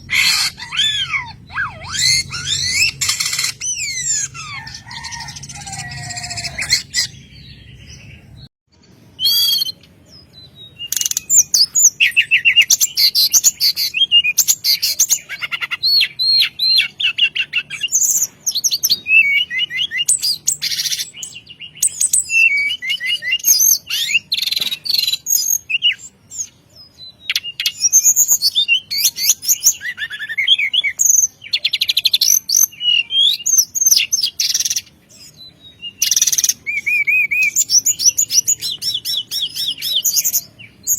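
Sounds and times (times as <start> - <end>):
songbird singing: 0.0 - 40.9.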